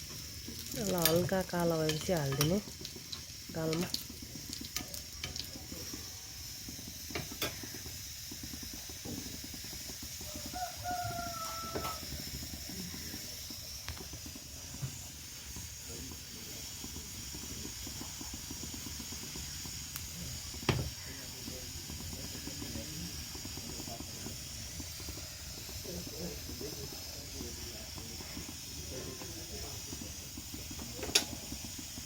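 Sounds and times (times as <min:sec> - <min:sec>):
faint sizzle of frying: 0:00.0 - 0:32.0
utensil clicks on pan: 0:01.8 - 0:05.6, 0:07.1 - 0:07.9, 0:30.7 - 0:31.7
rooster crowing: 0:10.2 - 0:12.1.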